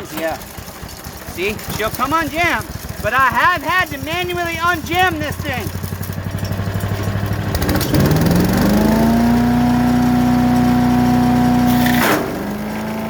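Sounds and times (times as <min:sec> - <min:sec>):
wood chipper engine running: 0:00.0 - 0:13.0
rising machine whine: 0:06.4 - 0:13.0.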